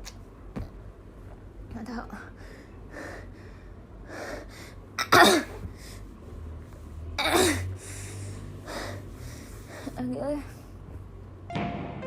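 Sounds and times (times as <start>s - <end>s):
person sneezing or coughing explosively: 5.0s - 5.6s.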